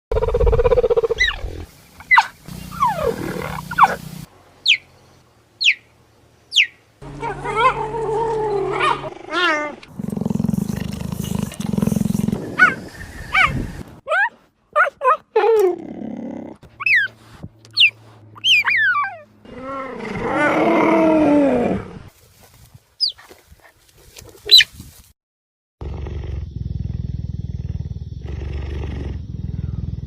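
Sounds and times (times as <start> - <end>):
cheetah chirps: 0.2 - 4.0, 4.6 - 4.9, 5.6 - 5.9, 6.5 - 6.8, 16.8 - 19.2
cheetah wavering calls: 0.2 - 4.0, 4.6 - 4.8, 5.6 - 5.8, 16.8 - 17.2, 17.8 - 19.3.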